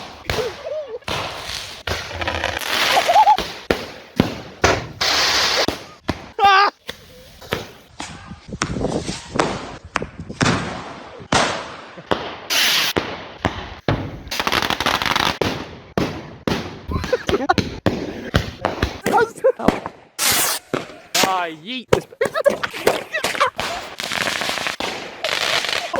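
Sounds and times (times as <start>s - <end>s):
firecrackers banging: 0.0s - 25.9s
firework hissing burst: 1.1s - 3.4s, 5.0s - 5.7s, 12.5s - 13.0s, 20.2s - 20.6s.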